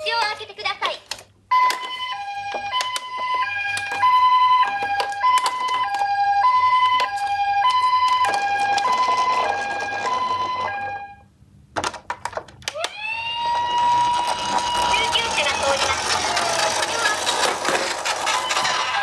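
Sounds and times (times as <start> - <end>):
toy electronic sirens hi-lo: 1.5 - 11.2, 12.7 - 17.5, 18.1 - 19.0
plastic clicks and rattles: 11.7 - 13.0, 14.0 - 19.0.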